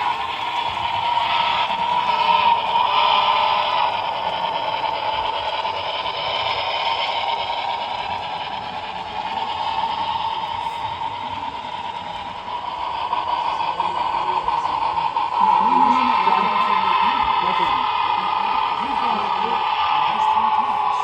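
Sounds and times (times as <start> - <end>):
model train running sound from speaker: 0.0 - 21.0.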